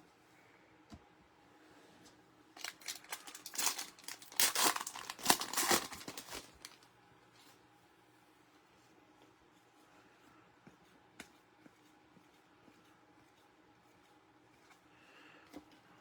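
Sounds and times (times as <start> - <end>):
plastic packaging crinkling: 2.6 - 6.8.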